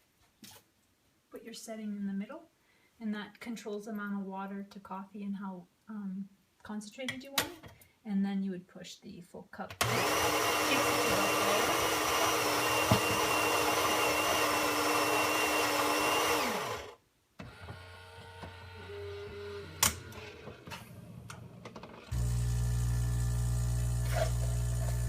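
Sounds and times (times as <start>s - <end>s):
coffee grinder grinding beans: 9.8s - 17.0s, 22.1s - 25.0s.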